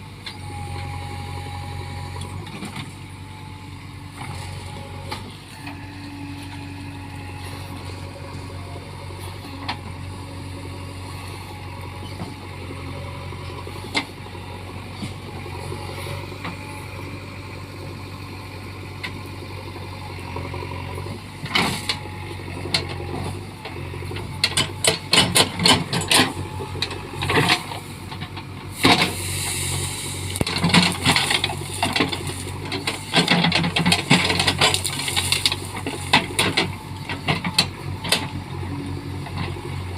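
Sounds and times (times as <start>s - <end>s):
diesel engine running: 0.0s - 39.9s
branches cracking and knocking: 29.1s - 36.8s.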